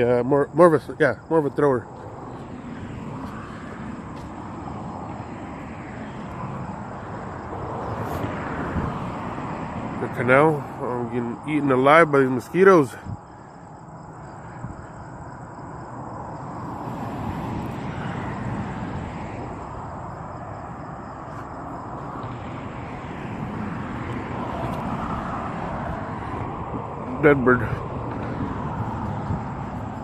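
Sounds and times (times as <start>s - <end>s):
outdoor rumble and hiss: 0.0s - 30.0s.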